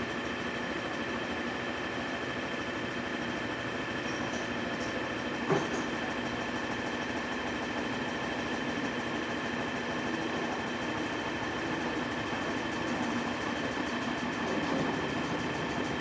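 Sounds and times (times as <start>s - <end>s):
tractor engine running: 10.4s - 16.0s.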